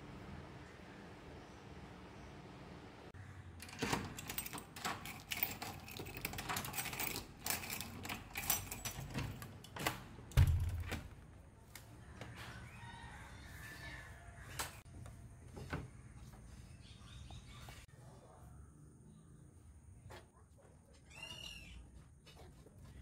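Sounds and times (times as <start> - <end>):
clothes clicking and rattling: 3.6 - 11.3
dull thump: 10.4 - 11.1.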